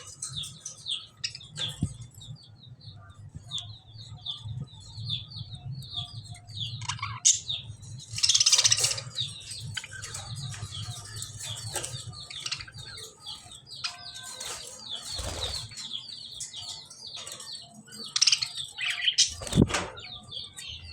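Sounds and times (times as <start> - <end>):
budgerigars chirping: 5.1 - 20.9.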